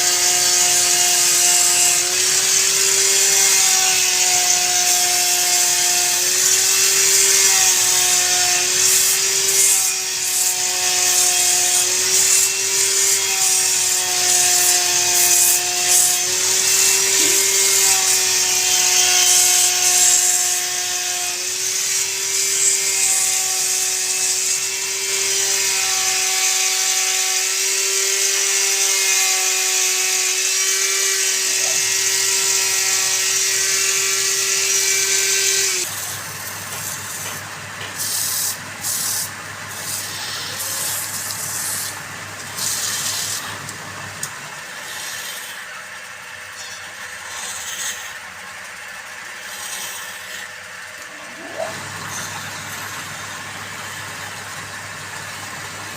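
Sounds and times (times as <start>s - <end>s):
loud hiss of cutting: 0.0s - 55.9s
wood lathe motor whine: 0.0s - 55.9s.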